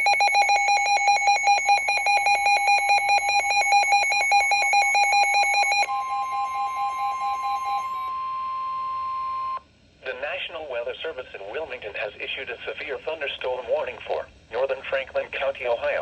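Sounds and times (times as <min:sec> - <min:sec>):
steady alarm tone: 0:00.0 - 0:09.6.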